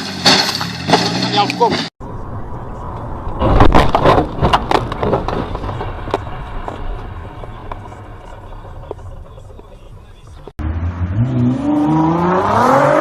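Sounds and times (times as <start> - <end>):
car crash impacts: 0.0 - 1.9, 3.3 - 10.5.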